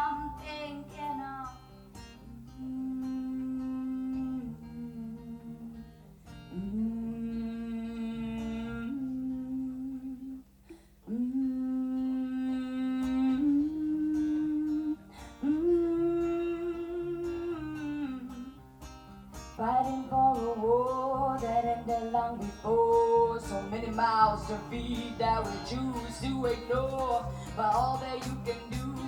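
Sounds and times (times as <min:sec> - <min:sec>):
fingerpicked acoustic guitar: 0:00.0 - 0:29.0
person humming a melody: 0:02.5 - 0:05.8, 0:06.5 - 0:18.6.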